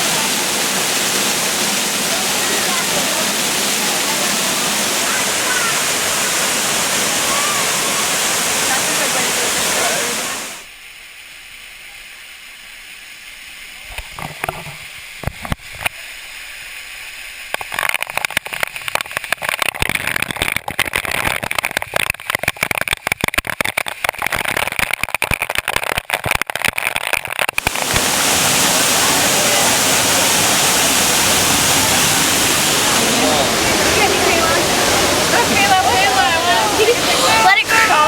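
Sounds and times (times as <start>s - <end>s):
waterfall rushing: 0.0s - 10.7s, 27.6s - 38.0s.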